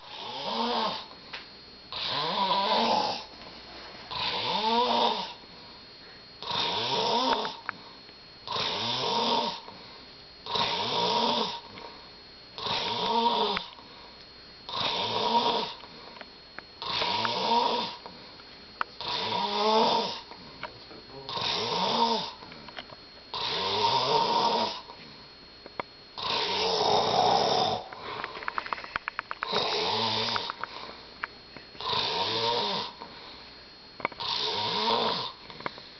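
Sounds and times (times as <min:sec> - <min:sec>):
person snoring: 0:00.0 - 0:01.1, 0:01.9 - 0:03.3, 0:04.0 - 0:05.4, 0:06.0 - 0:07.7, 0:08.4 - 0:09.8, 0:10.4 - 0:11.9, 0:12.6 - 0:13.8, 0:14.7 - 0:15.8, 0:16.8 - 0:18.0, 0:19.0 - 0:20.3, 0:21.2 - 0:22.6, 0:23.3 - 0:25.0, 0:26.2 - 0:28.4, 0:29.4 - 0:31.0, 0:31.8 - 0:33.4, 0:34.2 - 0:35.9.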